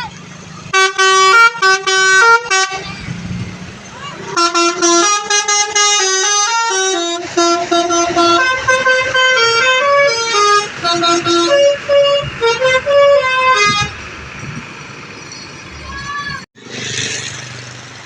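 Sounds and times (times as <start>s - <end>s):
multi-tone musical air horn: 0.7s - 3.0s, 4.3s - 14.0s.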